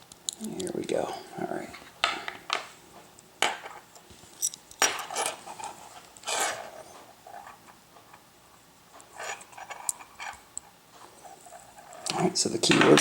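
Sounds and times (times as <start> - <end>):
metal clinking: 3.4 - 5.4.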